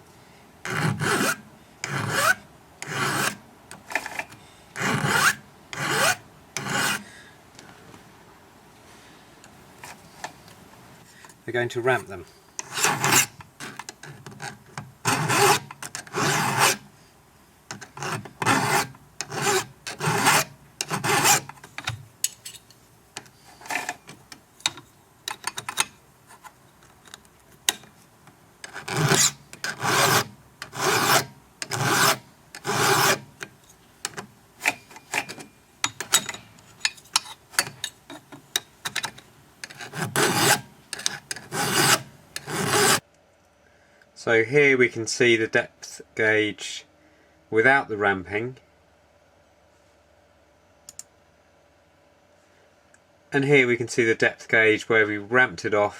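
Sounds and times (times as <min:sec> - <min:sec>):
hand file scraping steel: 0:00.6 - 0:07.1, 0:12.6 - 0:16.9, 0:17.7 - 0:22.6, 0:23.4 - 0:24.1, 0:28.6 - 0:38.3, 0:38.9 - 0:43.0.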